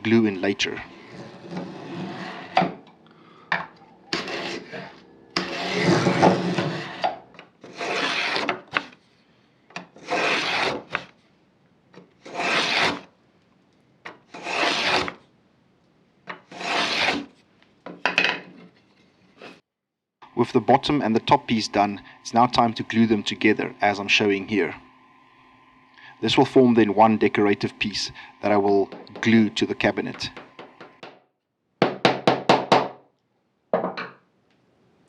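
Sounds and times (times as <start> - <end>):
hand tool rasping on wood: 4.1 - 8.9, 10.0 - 11.0, 12.2 - 13.0, 14.3 - 15.1, 16.5 - 17.3.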